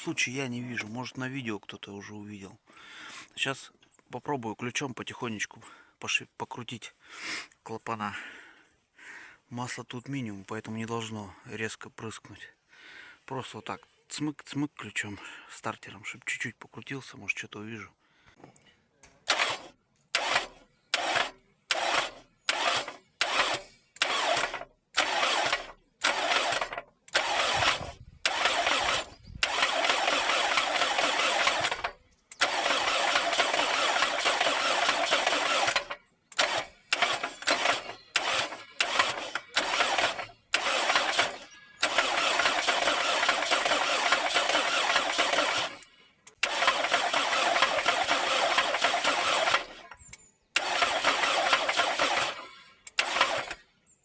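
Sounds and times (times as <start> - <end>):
starter motor cranking engine: 19.2 - 53.7.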